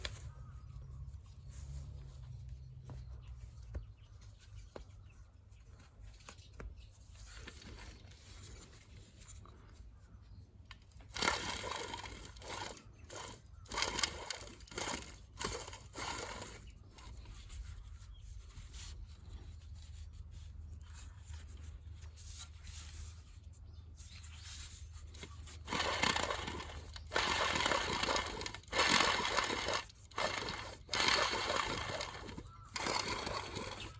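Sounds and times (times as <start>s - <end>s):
harsh irregular alternator bursts: 11.0s - 17.4s, 25.1s - 33.9s.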